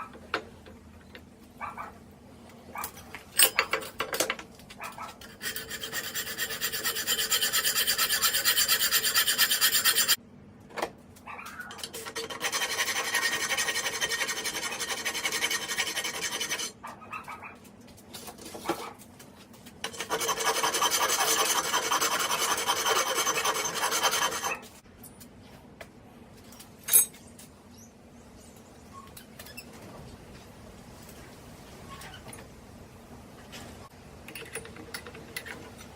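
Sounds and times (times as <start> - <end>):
scratchy rasping on metal: 5.1 - 10.2, 11.8 - 16.8, 19.8 - 24.8.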